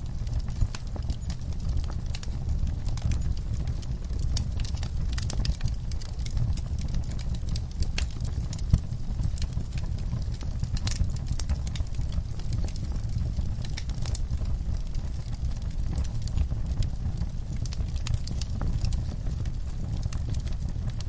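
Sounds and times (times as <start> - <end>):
low fire rumble: 0.0 - 21.0
wood fire crackling and popping: 0.0 - 21.0.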